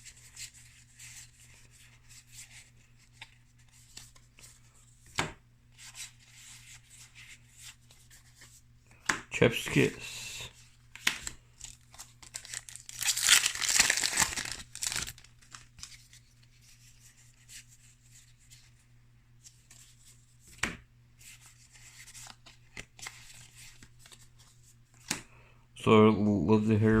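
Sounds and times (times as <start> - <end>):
cards rustling: 10.6 - 18.6, 21.2 - 25.2
foil wrapper tearing and crinkling: 11.2 - 16.0.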